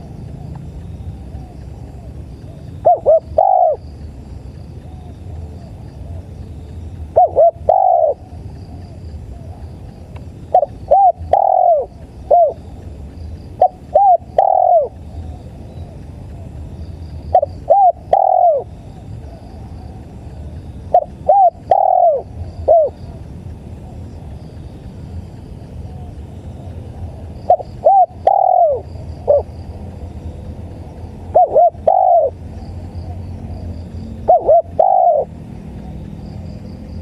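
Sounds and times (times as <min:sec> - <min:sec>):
dove cooing: 0:00.0 - 0:24.6, 0:25.4 - 0:29.7, 0:31.2 - 0:33.2, 0:34.2 - 0:36.1
faint cricket chirps: 0:00.0 - 0:37.0.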